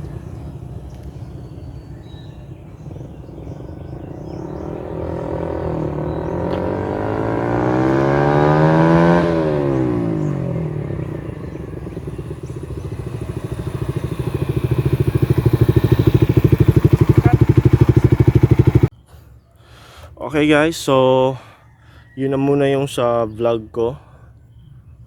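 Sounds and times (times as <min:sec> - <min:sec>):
motorcycle engine at low revs: 0:00.0 - 0:18.9
motorcycle passing at speed: 0:00.0 - 0:18.9.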